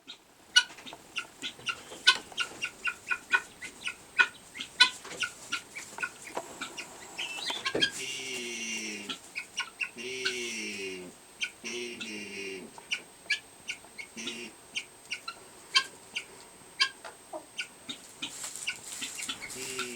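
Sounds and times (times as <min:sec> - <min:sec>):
guinea hen clucking: 0:00.0 - 0:19.9
harsh falling bird calls: 0:05.7 - 0:10.7.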